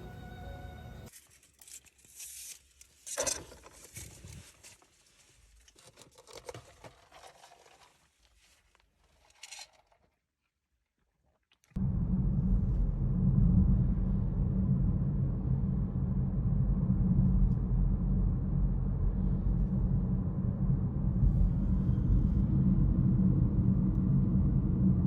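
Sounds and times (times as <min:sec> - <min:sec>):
background music: 0:00.0 - 0:01.1
rustling and crinkling: 0:01.1 - 0:10.5.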